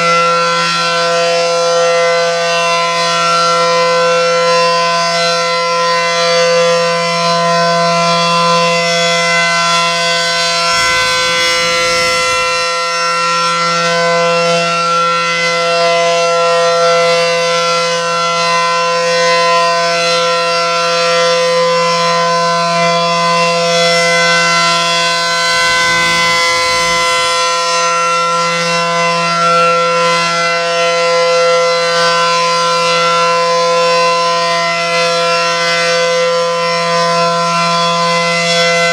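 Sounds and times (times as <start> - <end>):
warning siren steady tone: 0.0 - 38.9.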